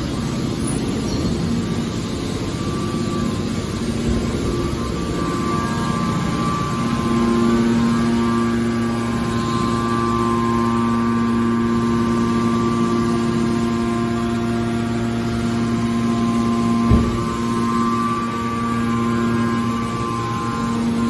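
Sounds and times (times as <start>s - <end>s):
hydraulic baler motor humming: 0.0s - 21.0s
short knock: 16.9s - 17.4s.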